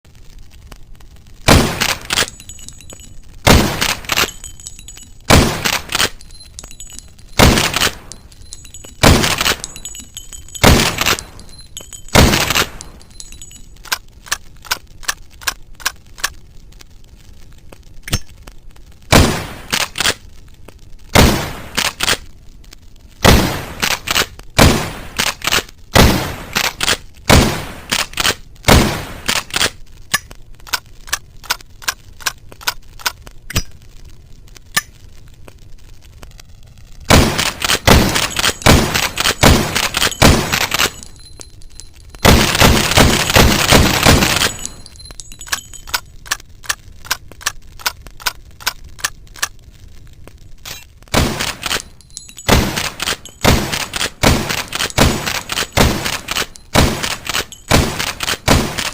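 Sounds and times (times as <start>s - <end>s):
rifle shots: 1.5s - 2.4s, 3.5s - 4.6s, 5.3s - 6.7s, 7.3s - 11.5s, 12.1s - 13.0s, 19.1s - 20.2s, 21.2s - 22.2s, 23.2s - 29.7s, 37.1s - 41.2s, 42.2s - 44.9s, 51.1s - 58.9s.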